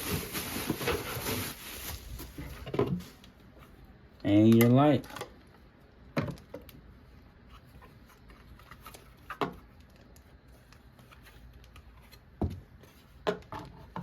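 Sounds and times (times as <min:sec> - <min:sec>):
packaging knocks and rustles: 0:00.0 - 0:03.2.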